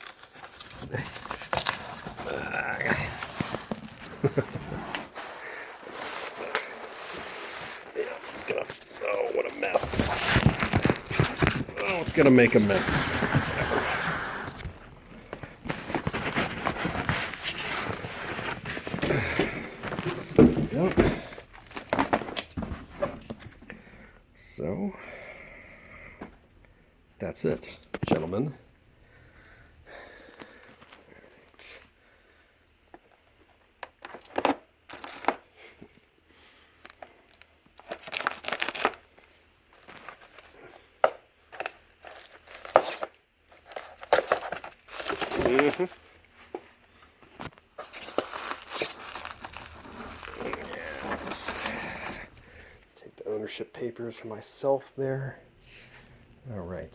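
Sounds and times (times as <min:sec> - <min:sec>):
packing material crinkling and tearing: 0:00.0 - 0:23.3, 0:33.9 - 0:35.4, 0:36.8 - 0:52.7
cardboard and bubble wrap rustling: 0:00.0 - 0:23.7, 0:33.9 - 0:35.5, 0:36.8 - 0:52.7
small crackles and knocks: 0:09.7 - 0:13.6.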